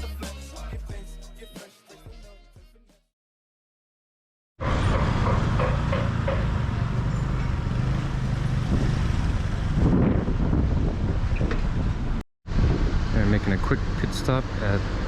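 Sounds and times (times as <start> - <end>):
motorbike engine running: 4.8 - 9.9
wind buffeting microphone: 7.8 - 14.1.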